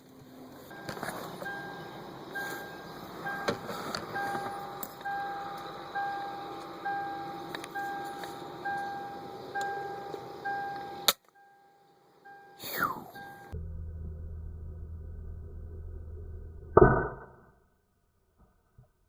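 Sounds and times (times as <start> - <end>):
steady low rumble: 0.0 - 11.1, 13.1 - 17.3
vehicle reversing alarm beeping: 0.6 - 13.8.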